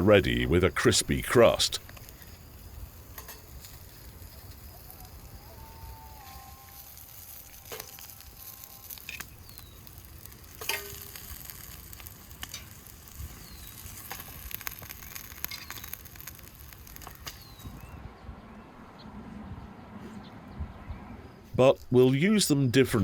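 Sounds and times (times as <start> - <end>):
meat patties sizzling in fat: 0.0 - 18.0.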